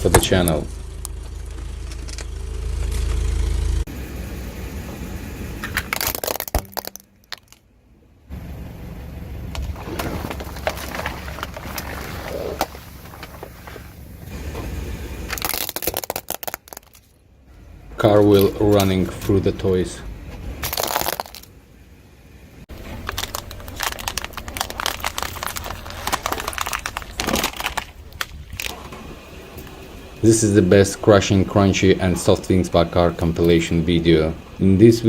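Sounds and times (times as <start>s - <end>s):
car engine rumble: 0.0s - 35.0s
tyre crushing objects: 9.5s - 17.1s, 22.7s - 28.8s.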